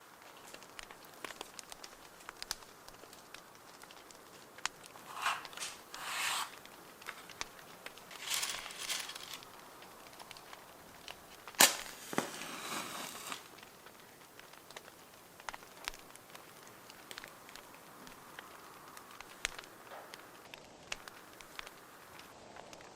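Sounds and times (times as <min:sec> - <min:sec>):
paper rustling and crinkling: 0:00.2 - 0:17.6
sharp paper snap: 0:11.5 - 0:13.7.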